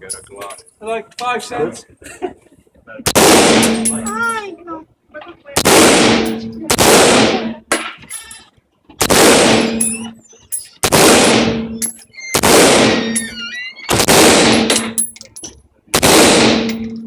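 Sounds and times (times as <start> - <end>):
rifle shots with decaying tail: 3.1 - 4.0, 5.6 - 7.5, 9.0 - 10.1, 10.8 - 11.8, 12.4 - 13.1, 13.9 - 15.0, 15.9 - 17.0.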